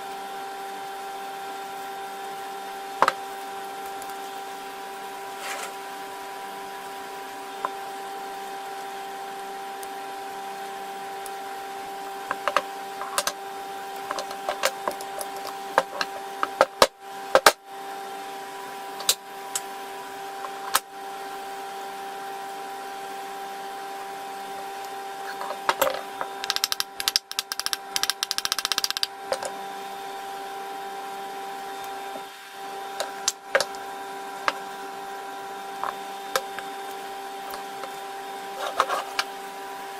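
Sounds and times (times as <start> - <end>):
steady mechanical hum: 0.0 - 39.9
sharp clicks and knocks: 25.4 - 29.5
rattle of rapid ticks: 26.4 - 29.1.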